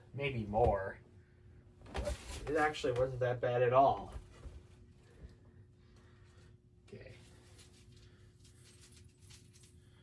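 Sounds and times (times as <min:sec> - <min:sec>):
faint steady hum: 0:00.0 - 0:10.0
faint small clicks and rustles: 0:05.2 - 0:10.0.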